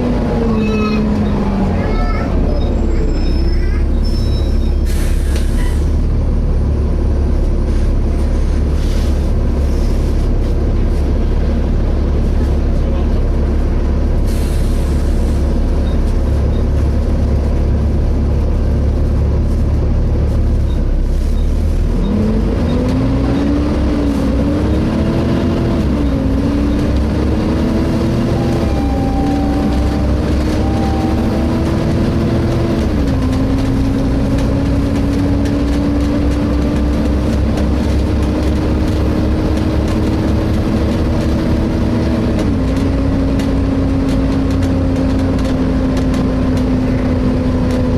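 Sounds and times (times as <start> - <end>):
bus diesel engine running: 0.0 - 47.9
howling whine rising in pitch: 26.7 - 32.8.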